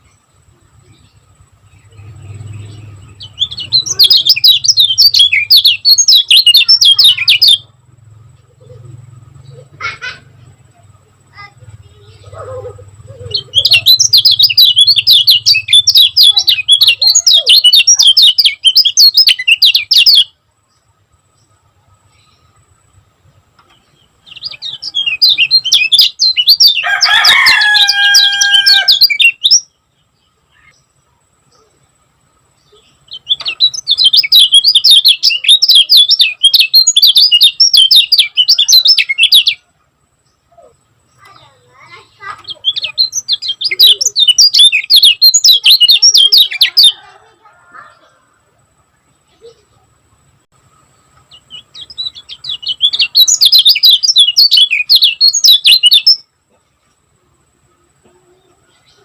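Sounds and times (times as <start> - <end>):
bird singing high chirping notes: 0.8 - 20.4, 23.9 - 30.8, 32.5 - 39.7, 40.4 - 47.4, 51.1 - 56.3
low drawn-out bird call: 24.0 - 29.6.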